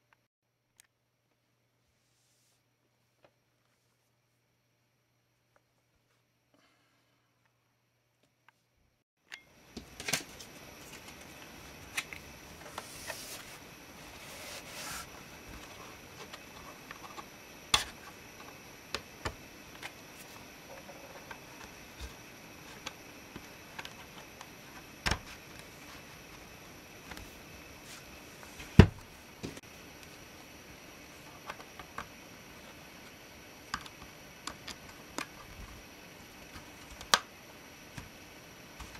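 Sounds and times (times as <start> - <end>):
steady background hiss: 9.6 - 38.9.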